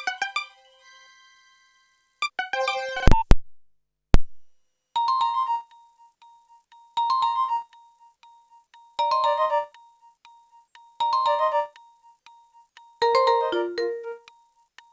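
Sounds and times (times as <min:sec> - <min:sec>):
electronic ringtone notes: 0:05.0 - 0:14.9.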